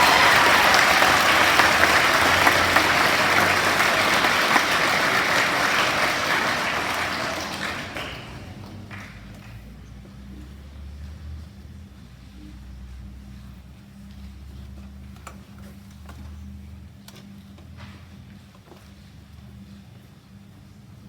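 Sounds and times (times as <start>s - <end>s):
audience applauding: 0.0s - 9.7s.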